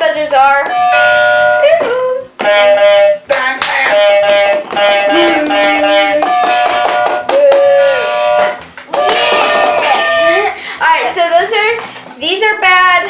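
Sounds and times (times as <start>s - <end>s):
buzzer button electronic tones: 0.7s - 1.8s, 3.9s - 7.3s, 7.9s - 10.4s.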